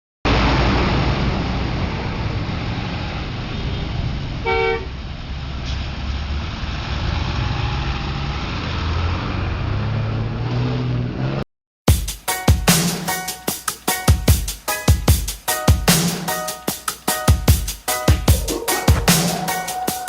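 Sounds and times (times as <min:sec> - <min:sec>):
road traffic: 0:00.3 - 0:11.4, 0:18.3 - 0:20.0.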